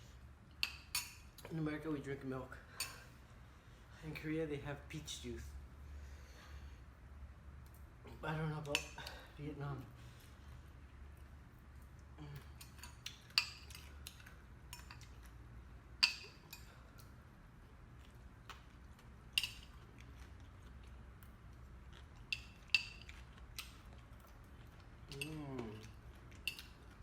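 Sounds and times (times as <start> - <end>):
utensils clinking against dishes: 2.8 - 3.1.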